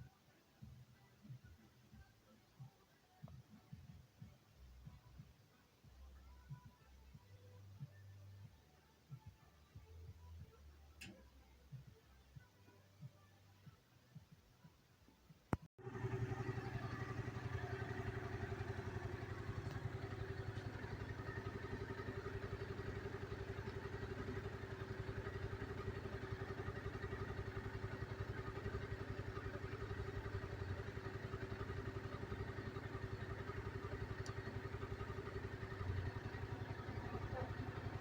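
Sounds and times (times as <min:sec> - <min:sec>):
motorcycle engine idling: 0:15.7 - 0:38.0.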